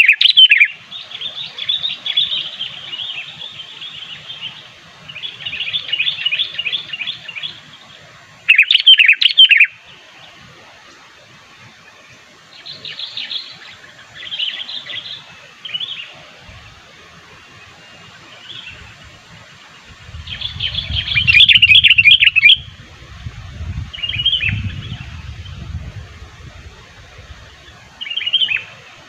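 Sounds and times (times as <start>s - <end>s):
bulbul chattering chirps: 20.2s - 22.7s.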